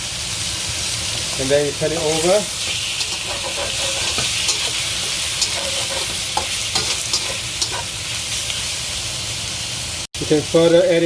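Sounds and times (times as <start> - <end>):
chicken sizzling in a wok: 0.0 - 11.0
utensil scraping and knocking wok: 1.0 - 8.5.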